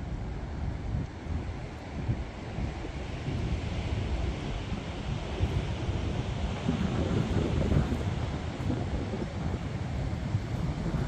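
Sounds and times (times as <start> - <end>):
hiss of wind: 0.0 - 11.0
wind buffeting microphone: 0.0 - 11.0.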